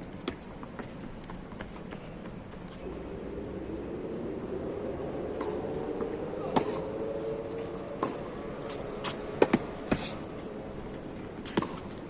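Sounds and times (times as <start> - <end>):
steady background hum: 0.0 - 12.0
tennis ball bouncing: 8.0 - 12.0
racquets hitting tennis ball: 8.7 - 12.0.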